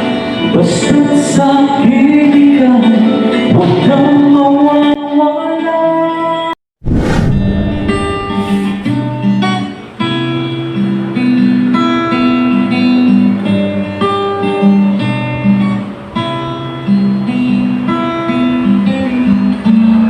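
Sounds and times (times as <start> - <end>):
guitar-led backing music: 0.0 - 6.5, 7.9 - 20.0.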